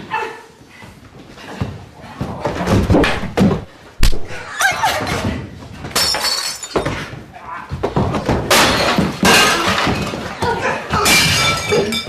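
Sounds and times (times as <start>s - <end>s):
things smashing and shattering: 5.9s - 7.1s, 8.0s - 12.0s.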